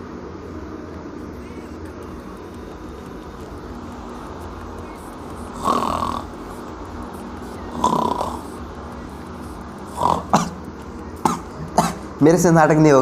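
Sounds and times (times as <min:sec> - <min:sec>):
man fake snoring: 0:05.4 - 0:06.6, 0:07.5 - 0:08.6, 0:09.5 - 0:10.6, 0:11.2 - 0:12.1.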